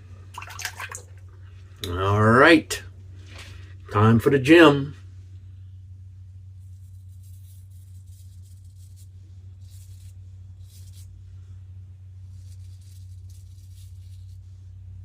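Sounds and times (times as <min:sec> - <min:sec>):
low electrical hum: 0:00.0 - 0:15.0
razor scraping stubble: 0:06.6 - 0:11.1, 0:12.3 - 0:14.5.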